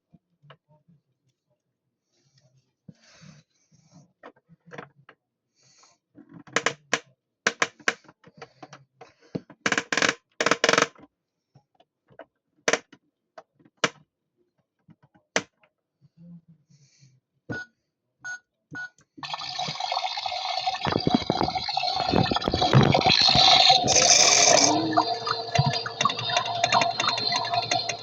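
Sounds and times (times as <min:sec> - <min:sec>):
plastic scraping brushes: 0:20.8 - 0:28.0
plastic toy clicks and rattles: 0:22.1 - 0:24.9, 0:25.5 - 0:28.0.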